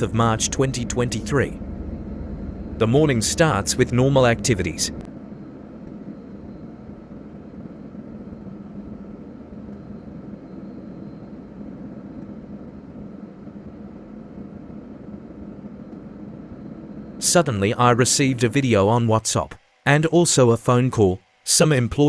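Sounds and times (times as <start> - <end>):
vehicle running low rumble: 0.0 - 17.2.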